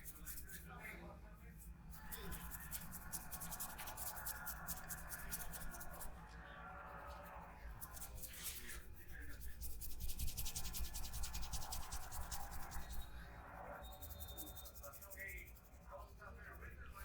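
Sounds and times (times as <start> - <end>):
hands rubbing hair and skin: 2.0 - 6.1, 7.8 - 8.8.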